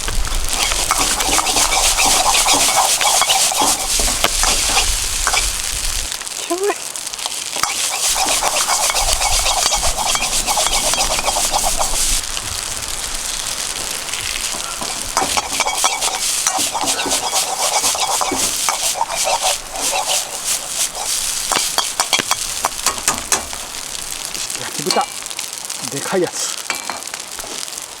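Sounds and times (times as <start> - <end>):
food sizzling in a wok: 0.0 - 28.0
spatula scraping a wok: 0.4 - 6.1, 7.2 - 12.2, 14.2 - 23.9.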